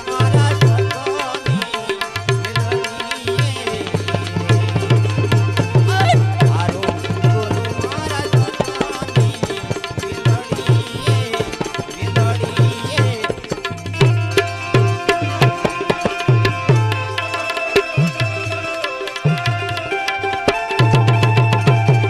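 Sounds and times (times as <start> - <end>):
hand drum rhythm: 0.0 - 22.0.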